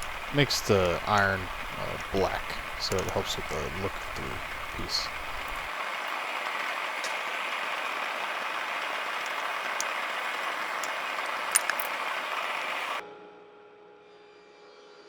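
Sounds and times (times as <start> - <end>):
faint sharp ticks: 0.0 - 5.7
gas burner hissing: 0.0 - 13.0.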